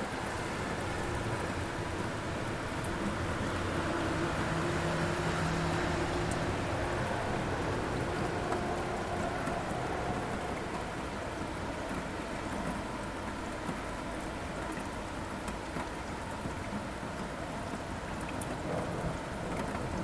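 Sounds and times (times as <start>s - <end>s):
steady rain falling: 0.0s - 20.0s
low rumble of thunder: 18.4s - 20.0s.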